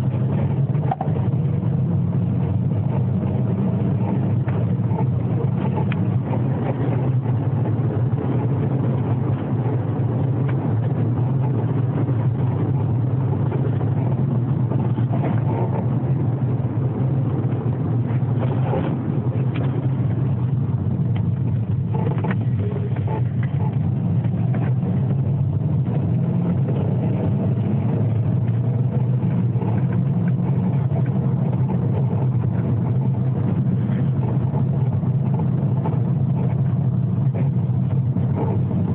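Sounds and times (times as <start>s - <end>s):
car engine and road rumble: 0.0s - 38.9s.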